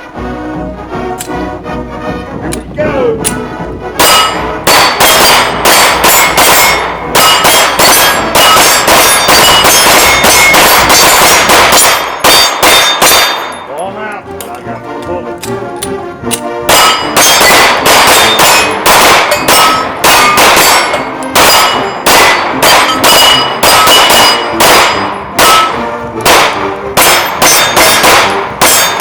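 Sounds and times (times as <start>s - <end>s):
rapid gunshots: 4.0s - 13.5s, 16.7s - 29.0s
steel targets ringing: 4.0s - 14.0s, 16.7s - 29.0s.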